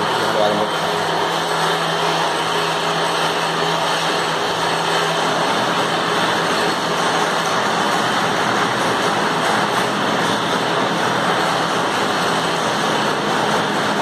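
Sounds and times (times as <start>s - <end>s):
metal lathe machining: 0.0s - 14.0s.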